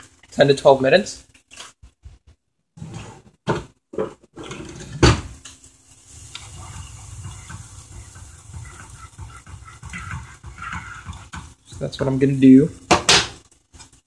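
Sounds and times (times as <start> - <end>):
food sizzling in hot oil: 5.3 - 14.0.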